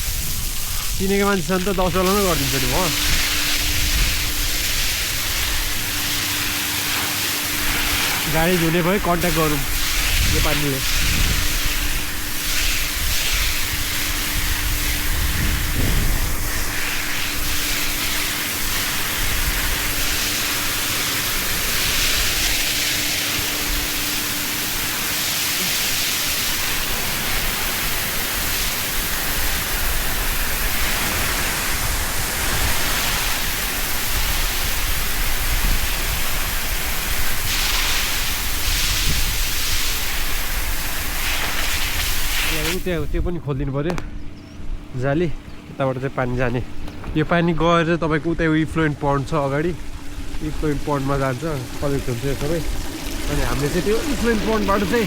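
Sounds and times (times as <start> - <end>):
hose spraying water: 0.0 - 44.0, 46.0 - 55.0.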